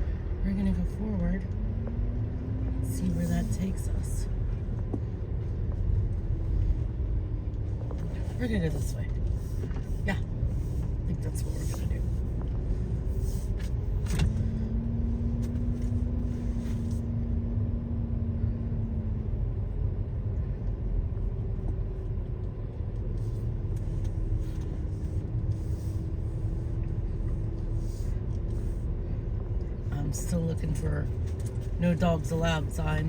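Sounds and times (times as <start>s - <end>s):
car engine and road noise: 0.0s - 33.0s.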